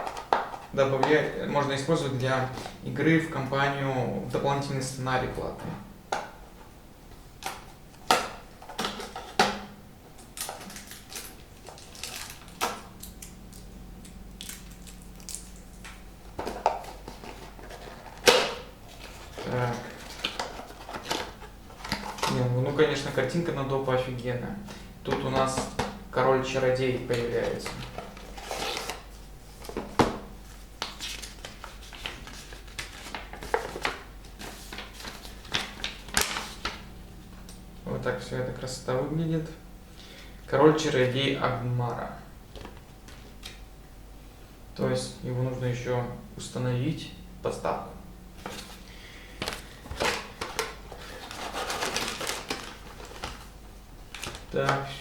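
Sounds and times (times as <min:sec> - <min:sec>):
packaging rustling and crinkling: 0:10.2 - 0:13.3, 0:14.4 - 0:22.5, 0:27.1 - 0:36.8, 0:48.4 - 0:54.8.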